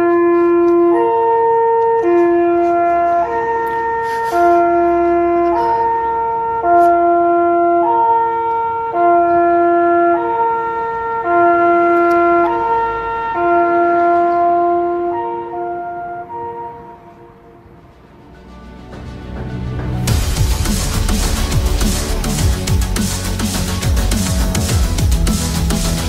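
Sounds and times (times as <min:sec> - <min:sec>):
two-tone fire siren: 0:00.0 - 0:18.2.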